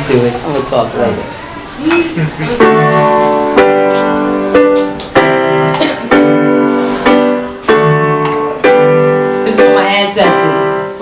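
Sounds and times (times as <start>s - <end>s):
piano chords ringing: 0.0s - 11.0s.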